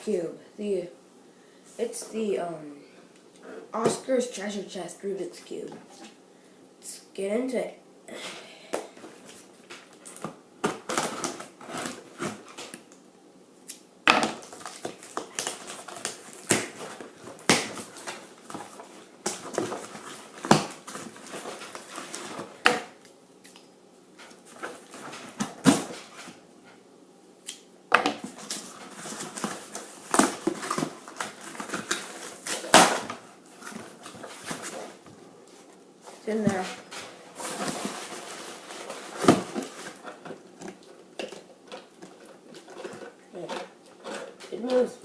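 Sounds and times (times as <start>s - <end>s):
packaging rustling: 14.3s - 22.7s, 28.2s - 44.5s.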